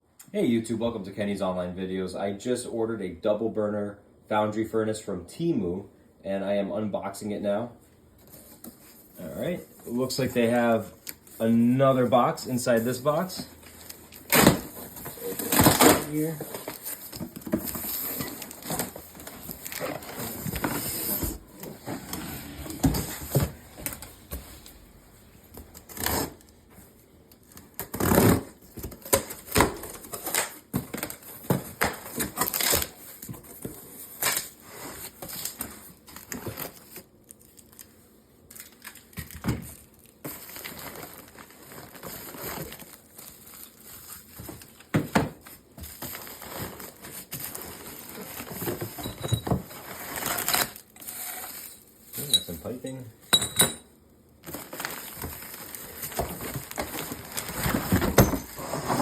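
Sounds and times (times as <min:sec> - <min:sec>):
packing material crinkling: 0:12.1 - 0:22.0, 0:33.9 - 0:49.0, 0:54.4 - 0:59.0
tape and cardboard tearing: 0:13.2 - 0:23.5, 0:25.7 - 0:26.6, 0:27.5 - 0:33.3, 0:34.1 - 0:37.9, 0:49.5 - 0:51.8.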